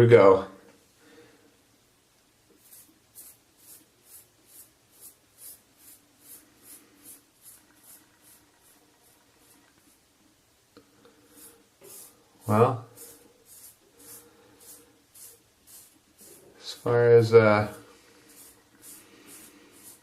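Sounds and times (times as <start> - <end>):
razor scraping stubble: 12.9 - 16.4.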